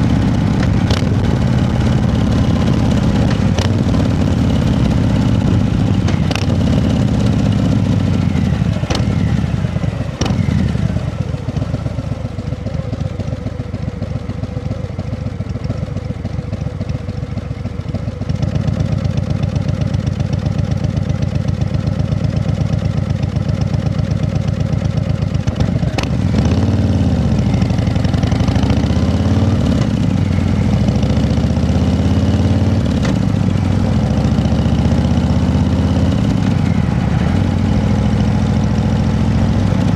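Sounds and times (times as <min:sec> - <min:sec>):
engine revving: 0:00.0 - 0:11.0, 0:25.6 - 0:33.4, 0:34.0 - 0:39.9.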